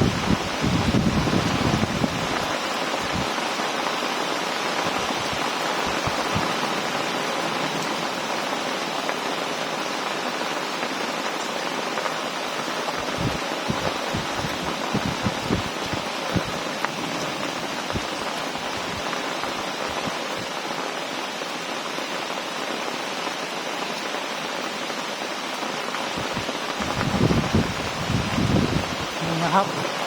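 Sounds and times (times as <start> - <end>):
wind buffeting microphone: 0.0 - 3.4, 4.8 - 7.0, 13.0 - 20.5, 26.1 - 29.6
heavy rain pouring: 0.0 - 30.0.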